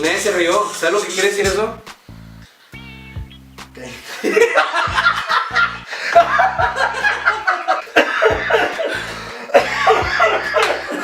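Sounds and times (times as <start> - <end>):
background music: 0.0 - 11.0
man laughing with hacking bursts: 3.8 - 11.0.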